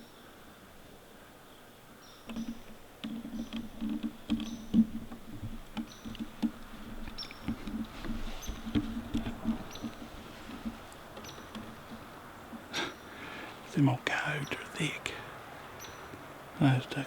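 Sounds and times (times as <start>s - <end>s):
rustling and scratching: 2.2s - 13.8s.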